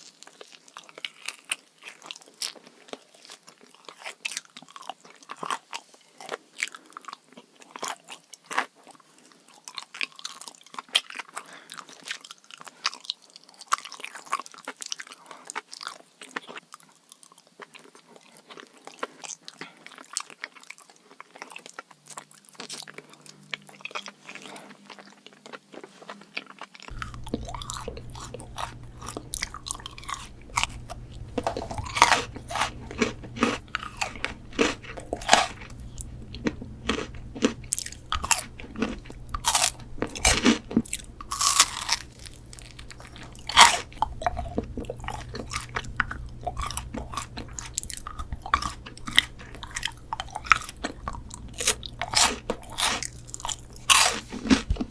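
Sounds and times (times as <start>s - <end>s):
crunchy chewing of sweets: 0.0s - 54.9s
steady low hum: 26.9s - 54.9s.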